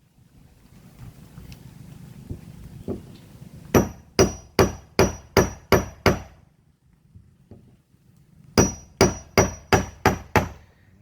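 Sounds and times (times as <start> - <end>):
hammer striking copper nail: 3.8 - 6.3, 8.6 - 10.6.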